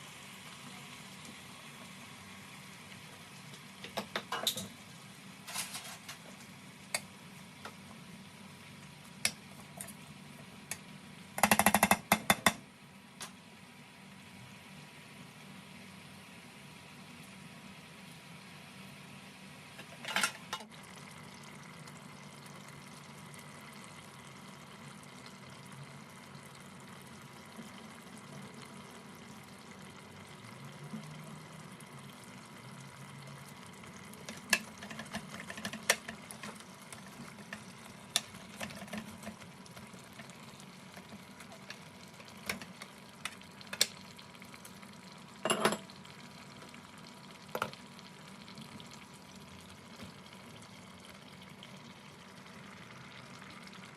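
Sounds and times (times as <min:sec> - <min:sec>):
utensil clinking against a pot: 0:34.2 - 0:39.4, 0:45.4 - 0:46.0.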